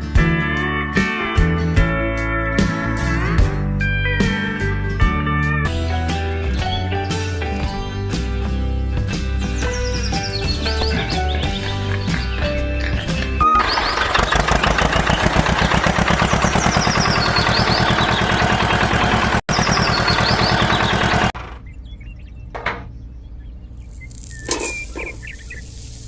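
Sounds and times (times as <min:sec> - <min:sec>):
engine chugging: 0:10.8 - 0:23.7.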